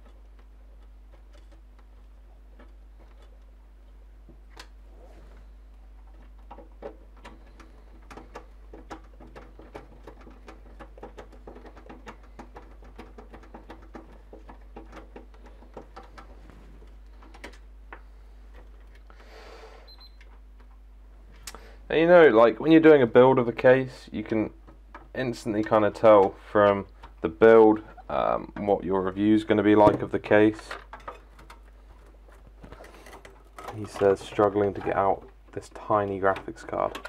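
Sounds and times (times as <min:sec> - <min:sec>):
clicks and taps on computer parts: 0:06.1 - 0:19.1, 0:29.8 - 0:37.0.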